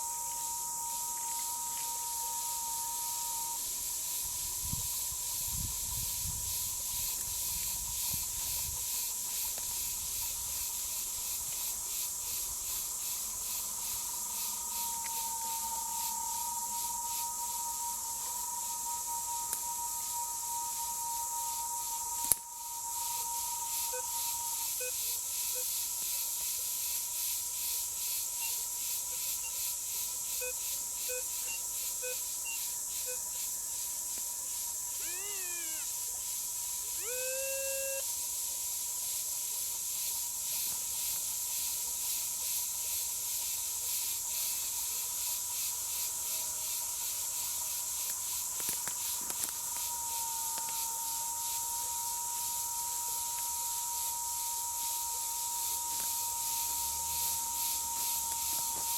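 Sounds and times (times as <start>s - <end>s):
insects buzzing: 0.0s - 58.9s
thin high tone: 14.5s - 25.6s, 35.0s - 35.9s, 37.0s - 38.0s, 49.9s - 58.9s.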